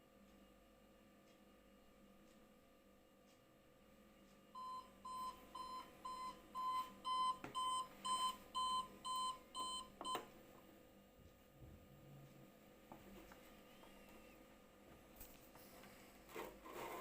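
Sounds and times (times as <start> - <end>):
alarm clock beeping: 4.6 - 10.2.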